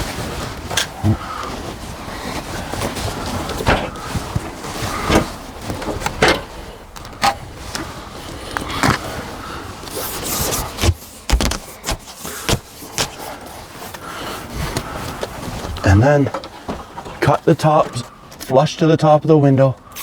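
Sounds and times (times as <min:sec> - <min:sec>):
plastic trowel scraping tape: 0:09.8 - 0:15.8.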